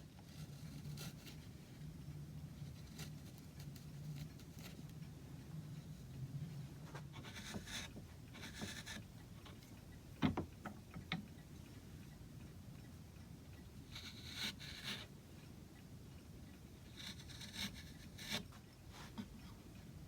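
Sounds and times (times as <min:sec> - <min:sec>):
tool scraping across wood: 0:07.2 - 0:09.0.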